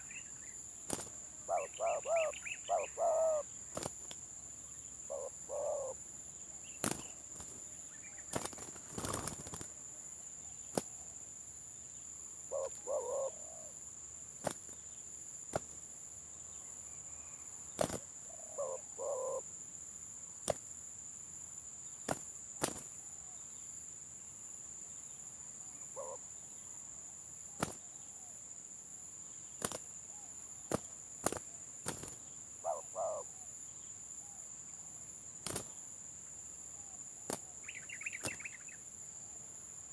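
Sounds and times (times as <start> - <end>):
dove cooing: 1.0 - 3.9, 5.0 - 6.0, 12.5 - 13.7, 17.9 - 19.5, 25.9 - 26.2, 32.6 - 33.4.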